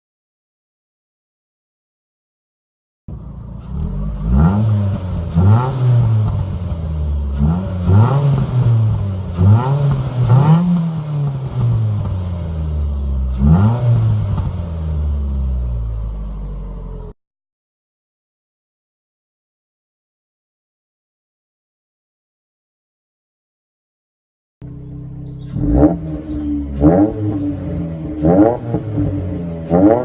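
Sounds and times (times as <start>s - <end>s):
car engine revving: 3.1s - 17.1s, 24.6s - 30.0s.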